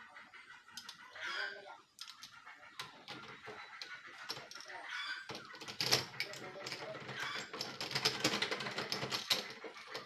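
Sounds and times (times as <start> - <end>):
doorknob parts clicking and rattling: 2.0 - 10.0.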